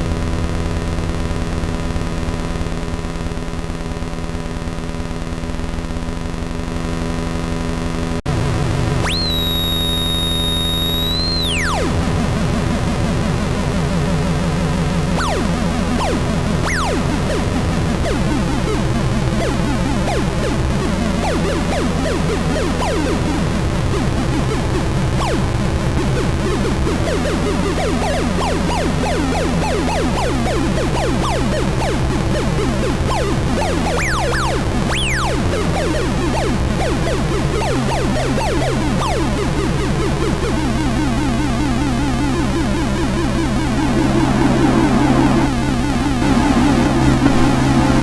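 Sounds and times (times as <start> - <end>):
droning synth bass: 0.0 - 48.0
high whistling tone: 9.1 - 11.7.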